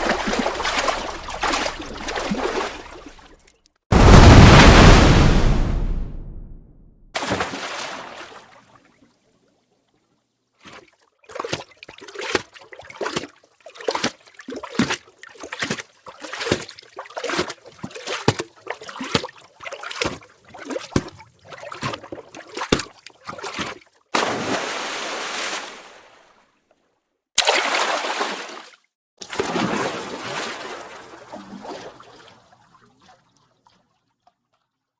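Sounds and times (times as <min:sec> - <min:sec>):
rushing wash of water: 0:00.0 - 0:03.1, 0:03.9 - 0:06.6
water splashing: 0:00.0 - 0:06.4, 0:07.2 - 0:09.1, 0:10.6 - 0:26.0, 0:27.4 - 0:33.8.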